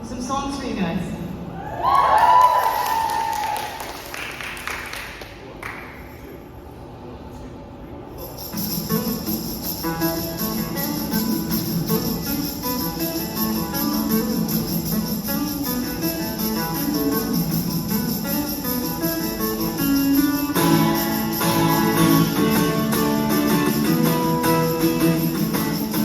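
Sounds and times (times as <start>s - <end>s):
guitar chords: 8.5s - 26.0s.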